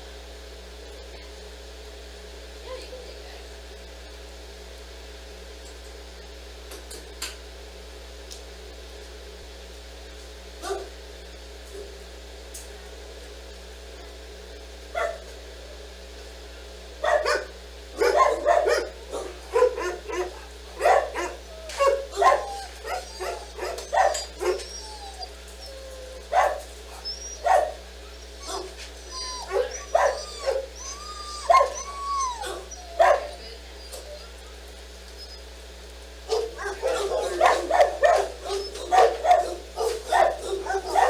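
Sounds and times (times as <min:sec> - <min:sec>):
dogs barking: 0:10.6 - 0:11.0, 0:14.9 - 0:15.3, 0:17.0 - 0:35.5, 0:36.2 - 0:41.0
dogs whining: 0:17.0 - 0:35.6, 0:36.3 - 0:41.0.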